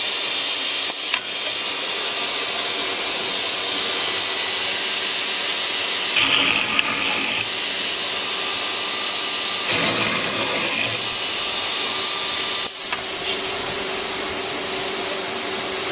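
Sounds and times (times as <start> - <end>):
machine hiss: 0.0 - 15.9
drilling into wood: 6.0 - 13.4.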